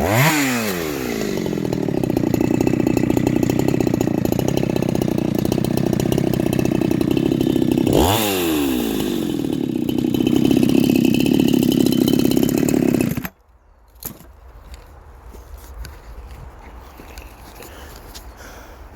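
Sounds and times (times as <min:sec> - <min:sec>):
chainsaw running: 0:00.0 - 0:13.4.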